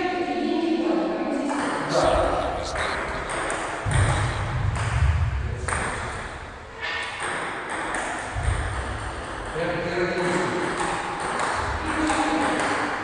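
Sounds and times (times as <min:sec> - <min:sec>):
low hall hum: 0:01.9 - 0:05.7.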